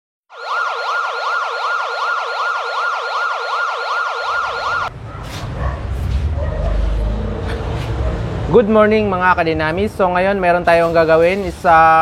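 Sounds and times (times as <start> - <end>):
siren yelping: 0.3 - 4.9.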